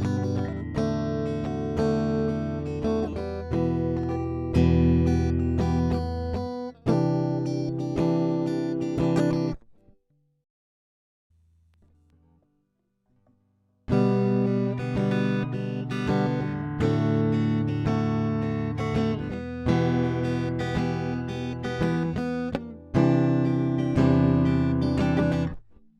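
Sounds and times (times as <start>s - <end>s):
guitar strumming chords: 0.0s - 9.6s, 13.9s - 25.6s.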